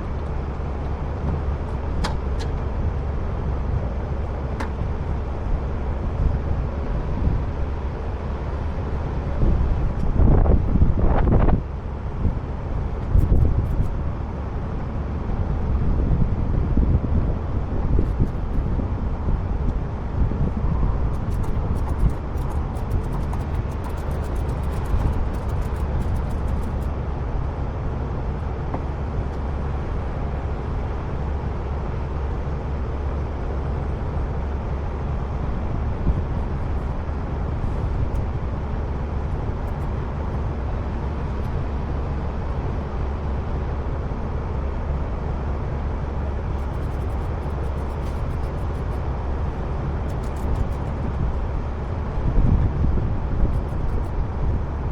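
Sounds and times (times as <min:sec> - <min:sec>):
truck engine rumbling: 0:00.0 - 0:54.6
faint rapid clicks: 0:21.2 - 0:26.9, 0:46.6 - 0:49.0.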